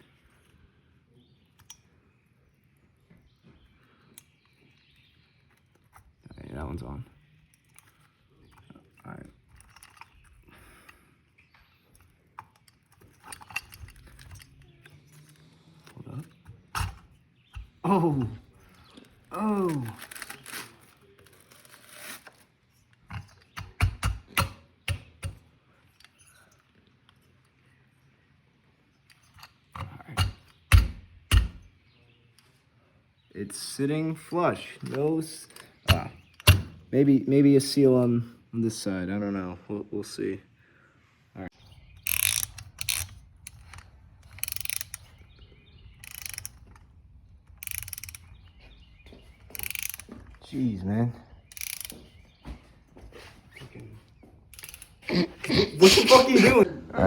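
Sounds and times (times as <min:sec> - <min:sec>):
engine parts knocking and clicking: 0:23.0 - 0:25.4, 0:29.1 - 0:31.7, 0:35.8 - 0:36.7
ratchet wrench clicking: 0:42.0 - 0:45.1, 0:46.0 - 0:46.8, 0:47.6 - 0:48.3, 0:49.5 - 0:50.1, 0:51.5 - 0:52.0, 0:54.6 - 0:55.0.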